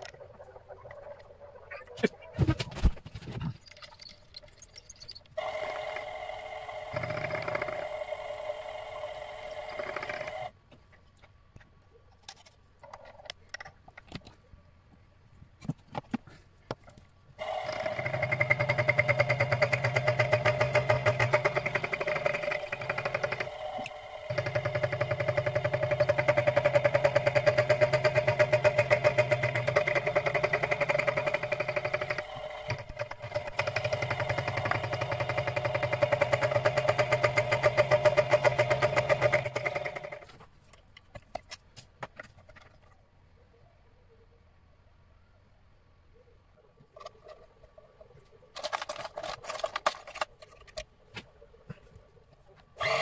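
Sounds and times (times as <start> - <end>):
small motor running: 5.4 - 10.5, 17.4 - 40.3, 52.8 - 53.0.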